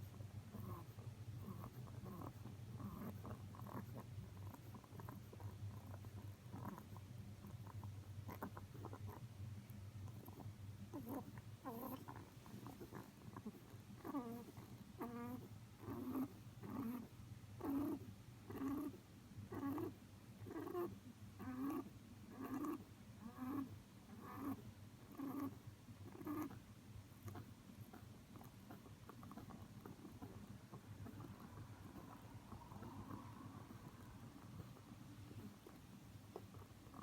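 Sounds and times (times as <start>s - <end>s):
rabbit snoring: 0.0s - 37.0s.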